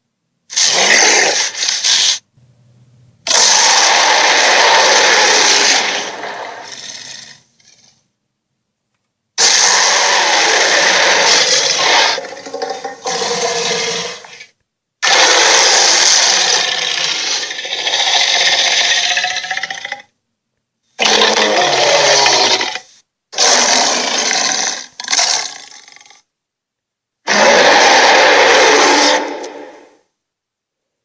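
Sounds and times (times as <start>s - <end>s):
dragon creature roars: 0.5s - 2.0s, 3.2s - 7.8s, 9.4s - 14.4s, 15.0s - 20.0s, 21.0s - 26.2s, 27.3s - 30.0s.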